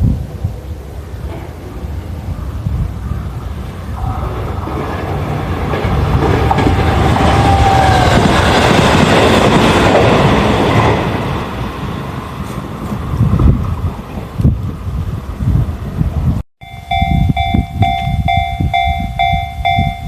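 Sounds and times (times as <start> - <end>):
train wheels clacking over rail joints: 4.2 - 11.2.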